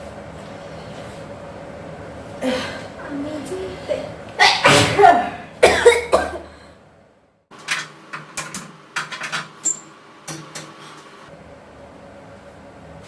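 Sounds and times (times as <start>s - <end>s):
person straining to sneeze: 4.4s - 6.5s.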